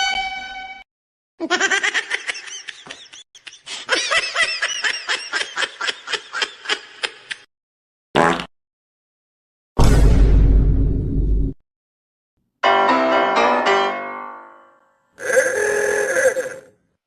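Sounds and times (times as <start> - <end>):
goofy laughing sound effect: 1.4 - 7.4, 15.2 - 16.7.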